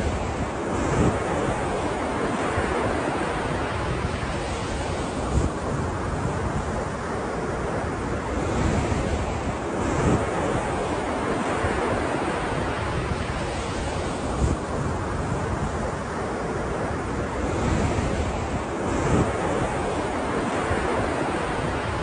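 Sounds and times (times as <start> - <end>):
waves breaking: 6.9 - 22.0.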